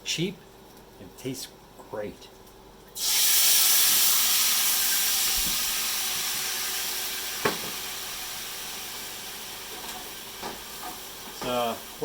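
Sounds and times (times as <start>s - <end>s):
frying pan hissing and sizzling: 3.0s - 12.0s.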